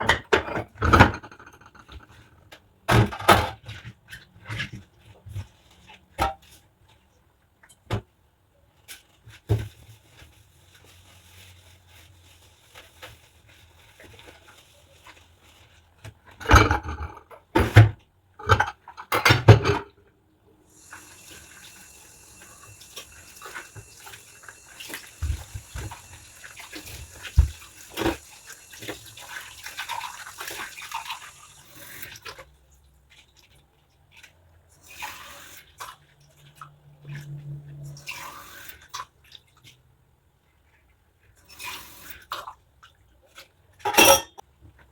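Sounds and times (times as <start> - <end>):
tap water running: 20.7 - 32.5
dishes clinking: 43.8 - 44.4.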